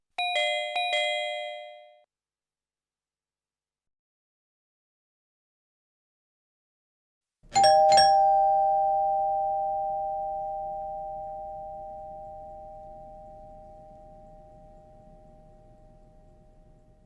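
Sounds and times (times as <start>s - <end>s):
two-tone doorbell chime: 0.2s - 2.1s, 7.5s - 16.1s.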